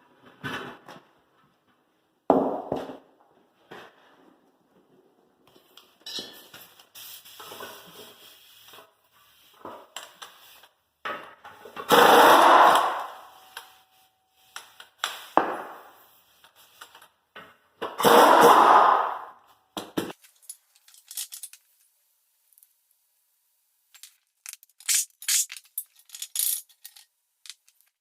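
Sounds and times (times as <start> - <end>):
metal clatter: 24.0 - 27.9.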